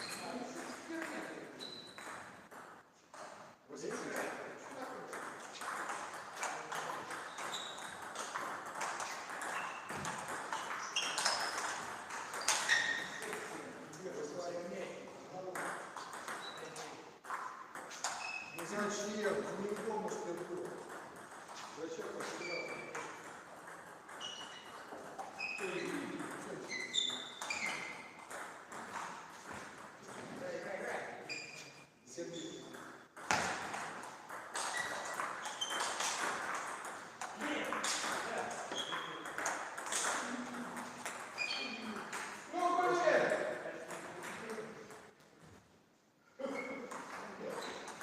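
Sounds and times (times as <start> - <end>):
shoes squeaking on floor: 0.0 - 2.4, 6.1 - 13.7, 16.1 - 18.8, 21.6 - 23.2, 24.1 - 30.3, 31.1 - 32.7, 33.3 - 36.8, 37.8 - 42.4, 46.4 - 48.0.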